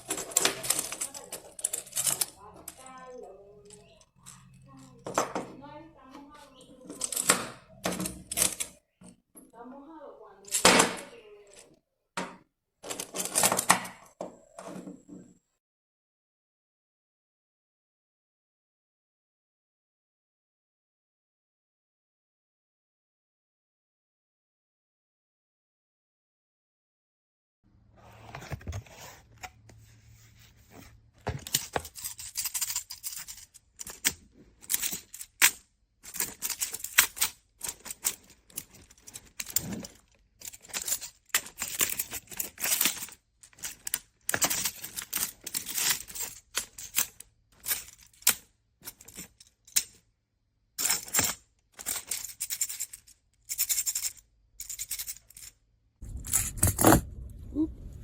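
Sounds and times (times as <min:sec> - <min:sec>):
plastic blocks clicking and clattering: 0:00.0 - 0:08.9, 0:12.8 - 0:14.8, 0:31.2 - 0:50.0, 0:50.8 - 0:57.1.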